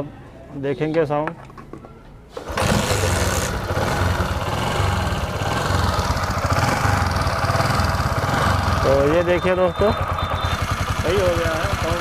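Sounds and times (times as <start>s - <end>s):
motorcycle engine idling: 2.6s - 12.0s.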